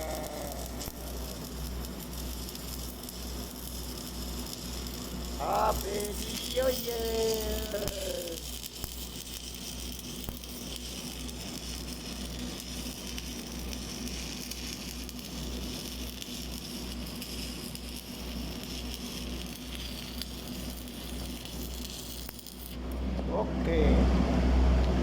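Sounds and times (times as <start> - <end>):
low hum: 0.0 - 13.0, 20.2 - 25.0
welding arc crackling and sizzling: 0.0 - 23.2.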